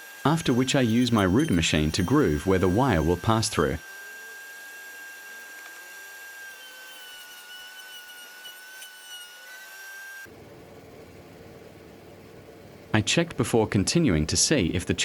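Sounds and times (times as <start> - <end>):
wood router whining: 0.0 - 10.3.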